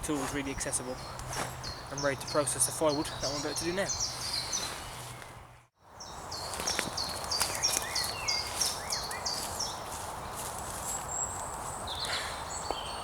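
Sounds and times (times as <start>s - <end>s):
songbird repeating high phrase: 1.8s - 4.2s.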